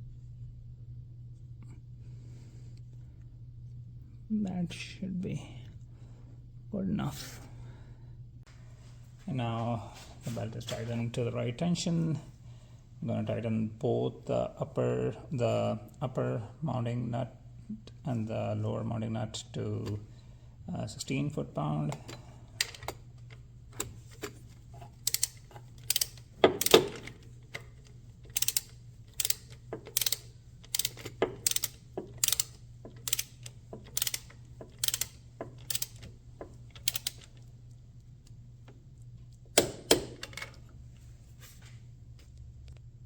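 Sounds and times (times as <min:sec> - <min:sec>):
ratcheting wrench clicking: 0:25.0 - 0:37.4.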